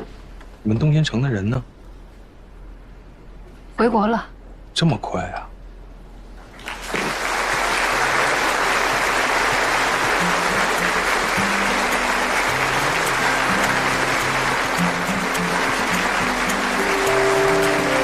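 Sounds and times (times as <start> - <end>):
arena crowd applauding: 6.6 - 18.0.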